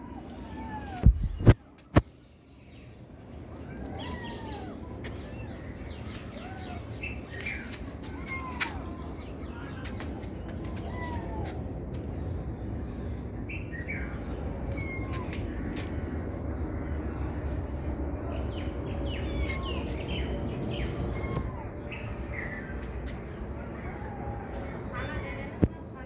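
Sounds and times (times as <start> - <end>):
kittens mewing: 3.6 - 11.7, 19.1 - 22.6.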